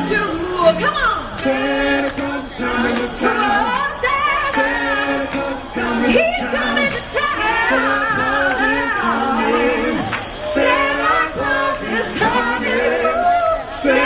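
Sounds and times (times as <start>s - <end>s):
group singing in harmony: 0.0s - 14.0s.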